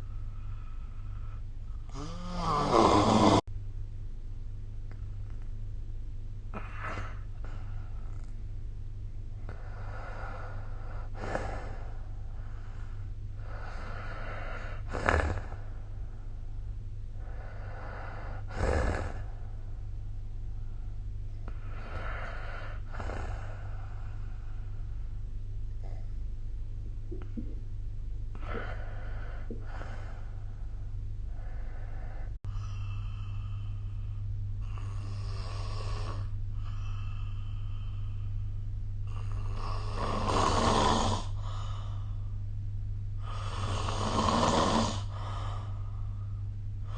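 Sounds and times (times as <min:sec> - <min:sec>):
steady low hum: 0:00.0 - 0:46.9
person snoring: 0:01.9 - 0:03.4, 0:09.5 - 0:15.8, 0:17.2 - 0:19.4, 0:21.4 - 0:24.8, 0:31.3 - 0:38.2, 0:39.1 - 0:42.2, 0:43.2 - 0:46.1.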